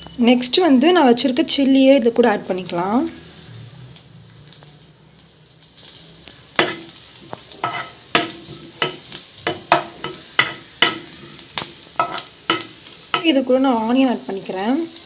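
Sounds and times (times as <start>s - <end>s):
soft sizzle: 0.0s - 15.0s
spoon knocking against frying pan: 7.6s - 11.4s, 12.0s - 13.3s.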